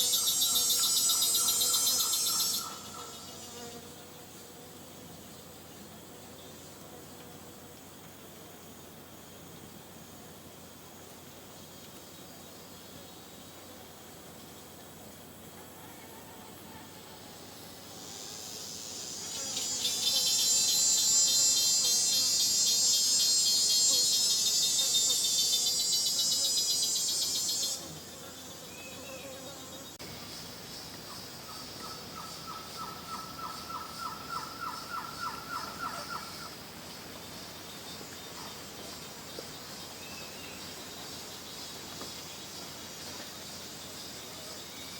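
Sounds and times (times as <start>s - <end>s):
low pulsed insect trill: 0.0s - 15.5s, 16.7s - 44.9s
insect buzzing drone: 0.0s - 15.9s, 16.6s - 44.9s
faint high insect hum: 0.0s - 44.9s.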